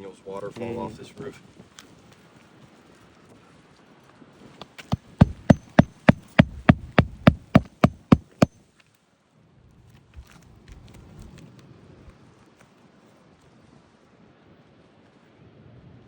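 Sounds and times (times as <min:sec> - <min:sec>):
hammer striking roofing nail: 0:04.8 - 0:08.5.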